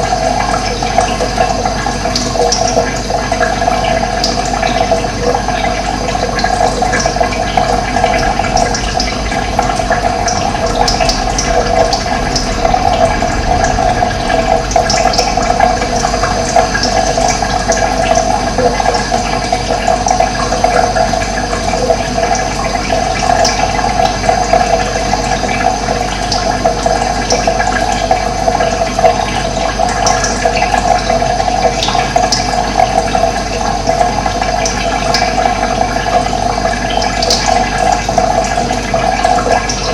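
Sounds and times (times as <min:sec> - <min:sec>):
running water rushing: 0:00.0 - 0:33.8.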